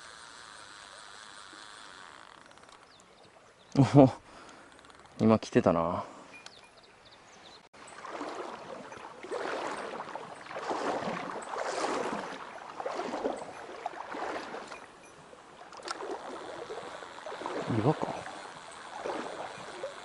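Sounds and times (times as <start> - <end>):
rushing stream water: 6.9 - 20.0.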